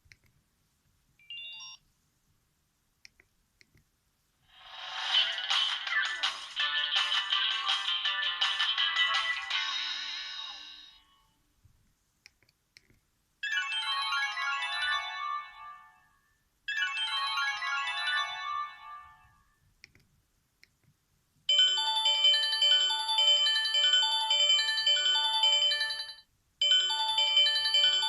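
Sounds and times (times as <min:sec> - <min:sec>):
mobile phone ringtone: 0:04.7 - 0:11.2, 0:13.4 - 0:16.1, 0:16.7 - 0:19.4, 0:21.5 - 0:28.0.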